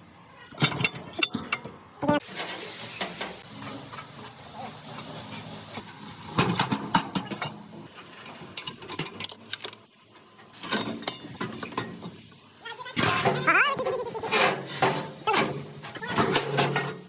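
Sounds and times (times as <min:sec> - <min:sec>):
metal tools clinking: 0:02.9 - 0:05.5, 0:06.4 - 0:07.8, 0:10.6 - 0:12.2.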